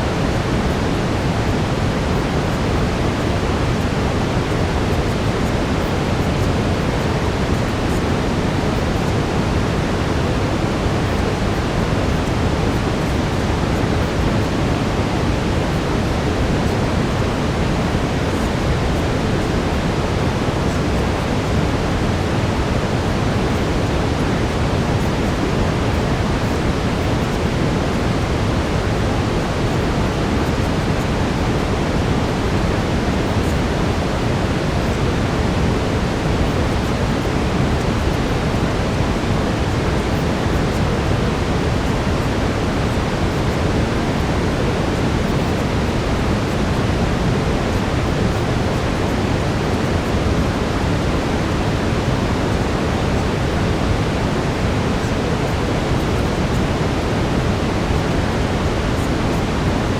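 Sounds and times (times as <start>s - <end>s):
brown noise hiss: 0.0s - 59.9s.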